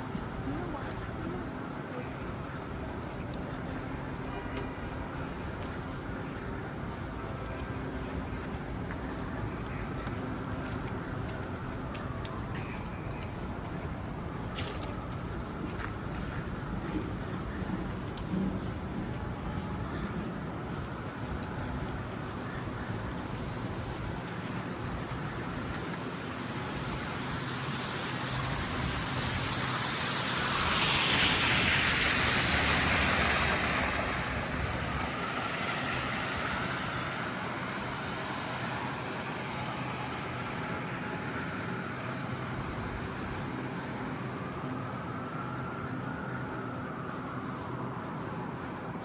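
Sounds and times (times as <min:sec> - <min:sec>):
steady street traffic: 0:00.0 - 0:49.0
vehicle tyre hiss passing: 0:26.7 - 0:40.3.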